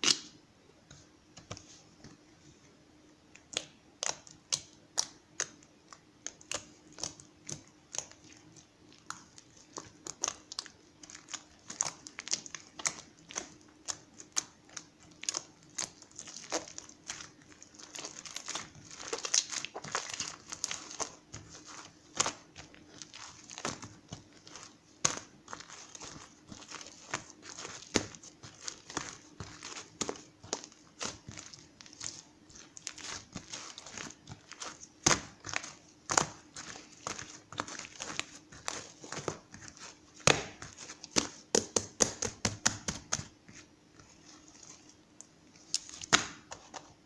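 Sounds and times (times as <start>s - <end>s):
faint steady hum: 0.0s - 47.0s.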